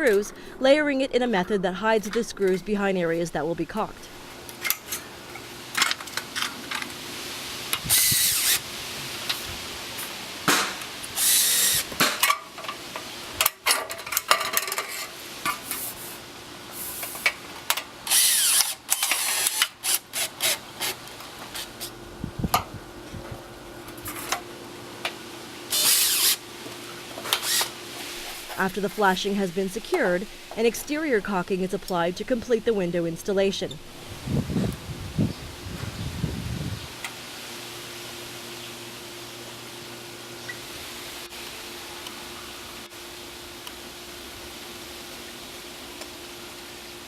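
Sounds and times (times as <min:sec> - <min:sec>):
cordless drill driving screws: 0:07.9 - 0:08.6, 0:11.2 - 0:11.9, 0:18.1 - 0:20.6, 0:25.7 - 0:26.4, 0:27.3 - 0:27.7.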